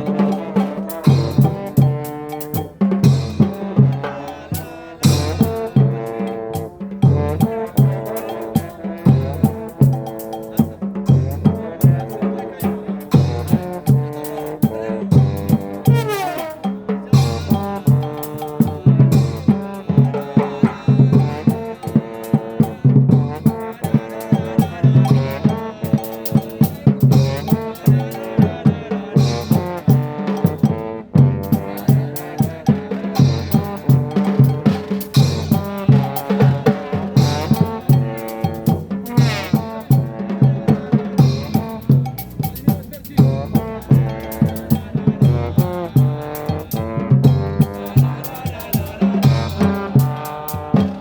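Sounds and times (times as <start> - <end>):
brass band playing: 0.0 - 51.0
steady drum beat: 0.0 - 51.0.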